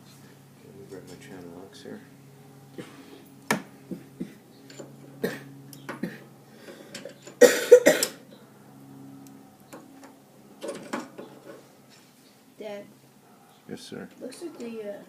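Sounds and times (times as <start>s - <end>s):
low steady hum: 0.0s - 15.0s
person coughing: 2.8s - 3.1s, 5.2s - 6.2s, 7.4s - 8.2s.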